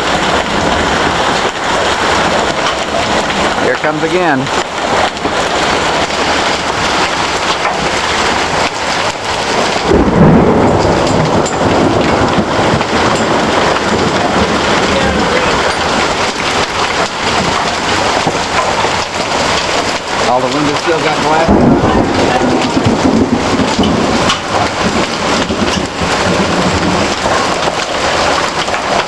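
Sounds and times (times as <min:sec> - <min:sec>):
hail and rain pounding: 0:00.0 - 0:29.0
loud low rumble: 0:04.8 - 0:19.6, 0:20.2 - 0:27.3.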